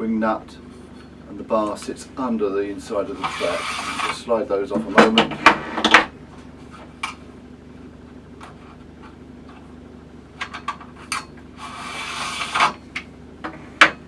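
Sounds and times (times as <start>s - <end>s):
pulley scraping slide: 2.8s - 6.9s, 10.8s - 14.0s.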